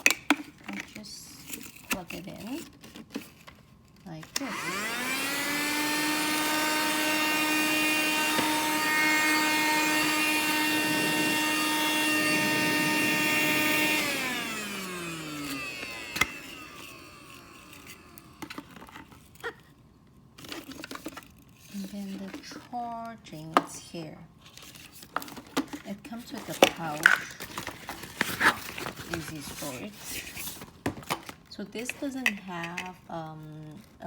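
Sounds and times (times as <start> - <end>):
handheld vacuum motor whining: 4.1 - 19.6, 25.2 - 34.0.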